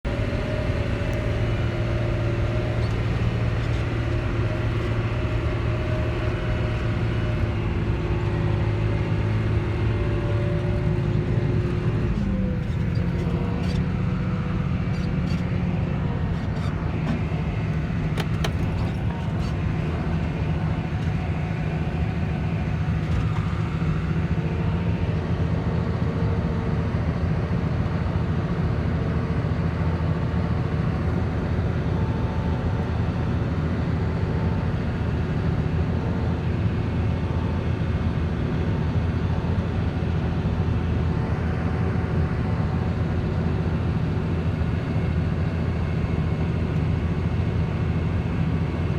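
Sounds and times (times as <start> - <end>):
tractor engine running: 0.0 - 29.2.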